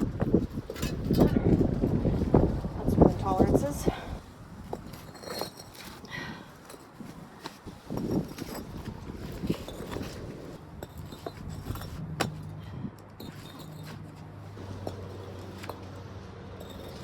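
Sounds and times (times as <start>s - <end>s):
pavers clinking and knocking: 6.6s - 16.0s.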